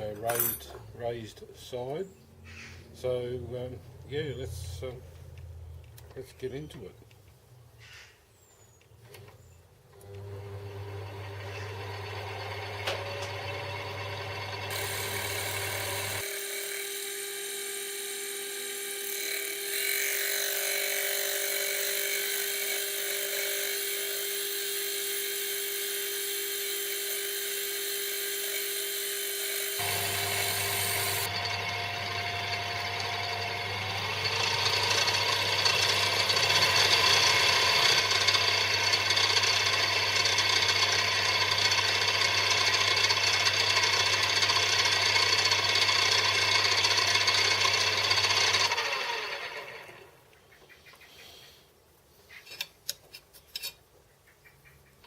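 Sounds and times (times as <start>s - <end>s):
lathe motor hum: 10.0s - 50.1s
lathe cutting metal: 10.7s - 49.8s.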